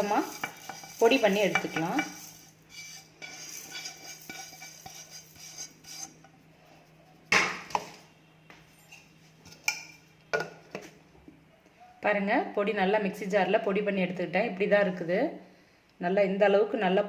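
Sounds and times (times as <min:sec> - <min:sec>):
spices rattling into steel jar: 0:00.0 - 0:05.5.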